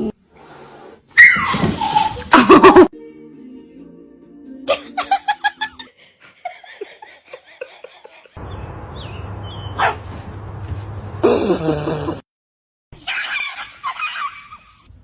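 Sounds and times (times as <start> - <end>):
person laughing: 2.3 - 2.9, 11.2 - 12.2.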